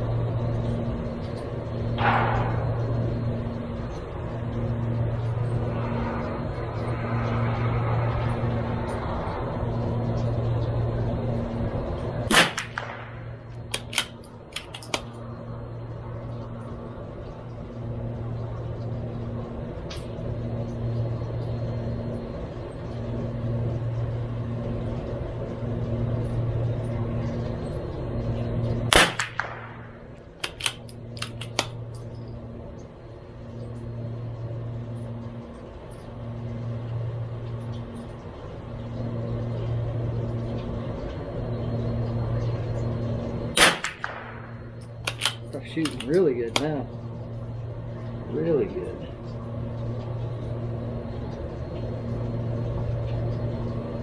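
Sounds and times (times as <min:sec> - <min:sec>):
low hum: 0:00.0 - 0:54.0
rifle shot crack: 0:12.3 - 0:14.1, 0:28.9 - 0:31.4, 0:43.6 - 0:46.1
rifle bolt clicks: 0:13.7 - 0:15.0, 0:30.4 - 0:31.7, 0:45.0 - 0:46.2.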